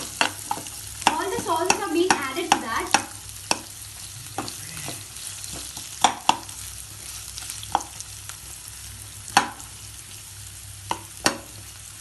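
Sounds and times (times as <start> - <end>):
spatula knocking against pan: 0.0 - 3.7, 5.5 - 6.5, 7.7 - 8.0, 9.3 - 9.7, 10.9 - 11.6
food sizzling in a frying pan: 0.0 - 12.0.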